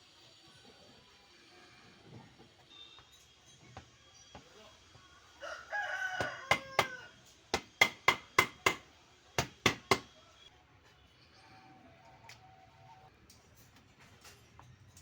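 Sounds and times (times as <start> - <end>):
rooster crowing: 5.4 - 7.2.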